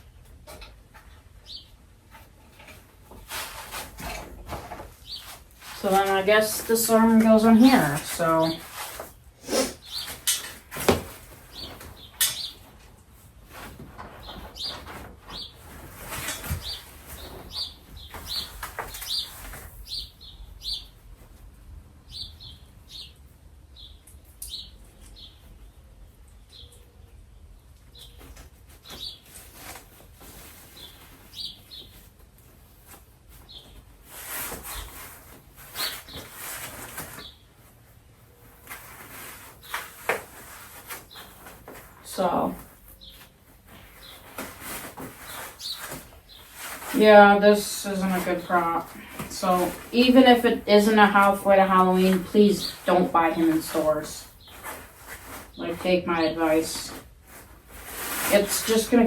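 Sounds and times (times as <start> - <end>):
small bird chirping: 1.4 - 1.8, 14.3 - 15.6, 16.6 - 21.0.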